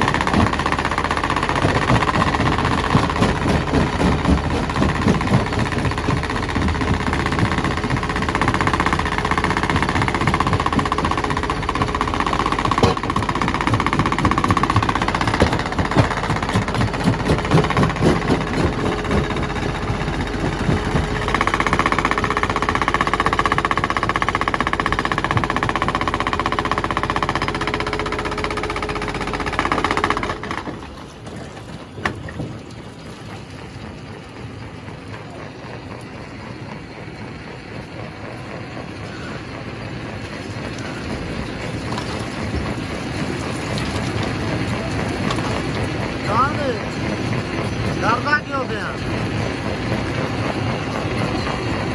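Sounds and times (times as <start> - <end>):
rocks knocking and grinding: 0.0 - 28.3, 40.3 - 48.0
machinery rumble: 0.0 - 51.9
mechanical whine: 33.4 - 51.9.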